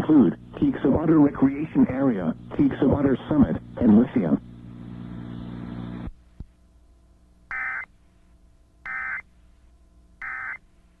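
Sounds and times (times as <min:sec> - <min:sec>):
steady hum: 0:00.0 - 0:11.0.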